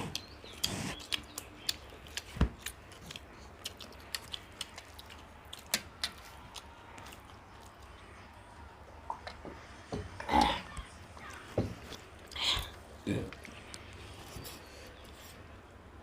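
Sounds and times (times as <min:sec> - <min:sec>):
chewing with wet mouth clicks: 0:00.0 - 0:08.0.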